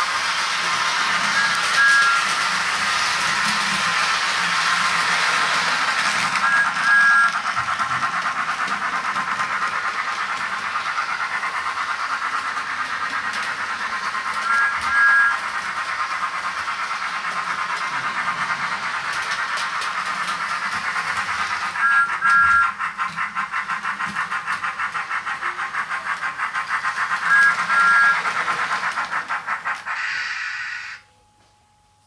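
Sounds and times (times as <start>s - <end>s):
rhythmic steam chuffing: 0.0s - 31.1s
toy train whistle toots: 0.3s - 7.8s, 12.8s - 16.2s, 20.7s - 22.9s, 27.0s - 28.6s, 30.0s - 31.2s.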